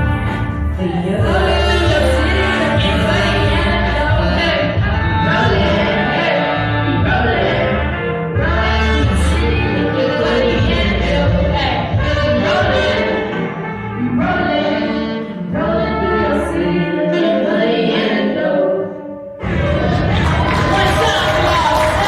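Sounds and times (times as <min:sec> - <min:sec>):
heavy bass line: 0:00.0 - 0:13.1, 0:19.4 - 0:22.0
live band with singing: 0:00.0 - 0:22.0.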